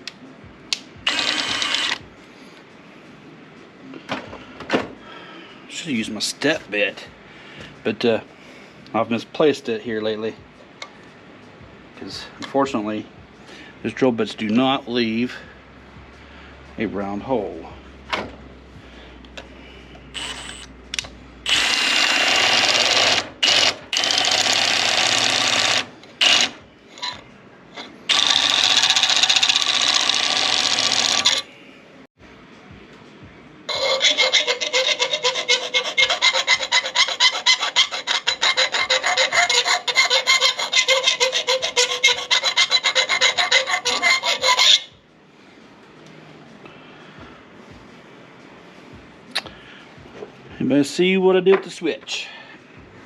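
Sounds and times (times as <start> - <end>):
file scraping aluminum: 21.4 - 31.5, 33.7 - 44.9.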